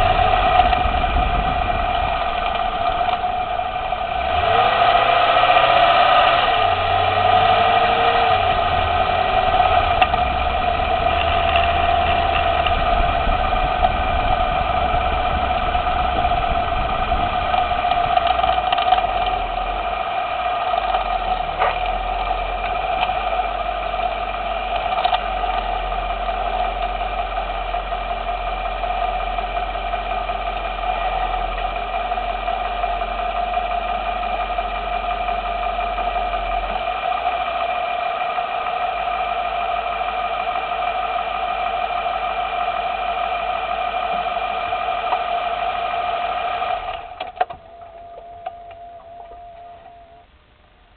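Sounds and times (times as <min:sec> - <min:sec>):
suspension clicks: 0:00.0 - 0:27.0, 0:43.9 - 0:50.4
car engine humming: 0:00.0 - 0:50.9.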